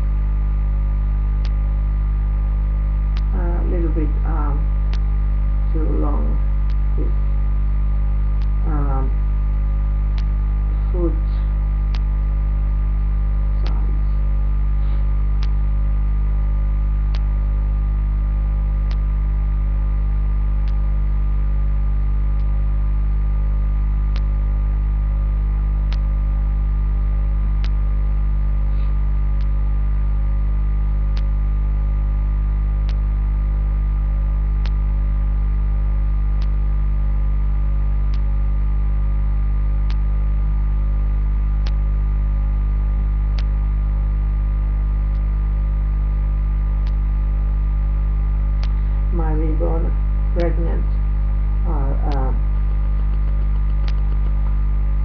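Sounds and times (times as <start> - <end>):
loud mains hum: 0.0 - 55.0.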